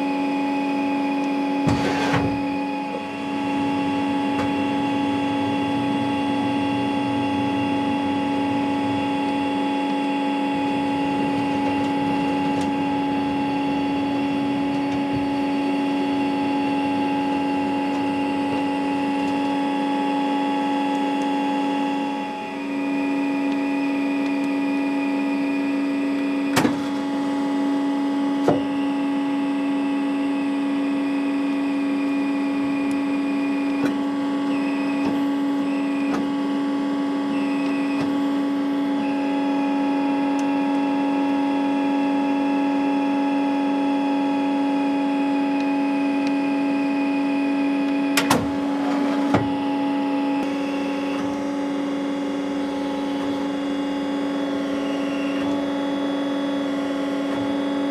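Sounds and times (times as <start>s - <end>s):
lathe running with mechanical hum: 0.0s - 57.9s
sharp clicks and knocks: 48.2s - 48.5s.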